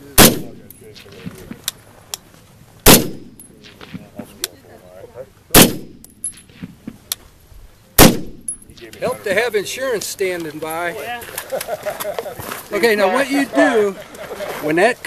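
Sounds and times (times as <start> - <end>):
rifle shots: 0.2 - 0.7, 2.8 - 3.8, 5.5 - 6.1, 8.0 - 8.6.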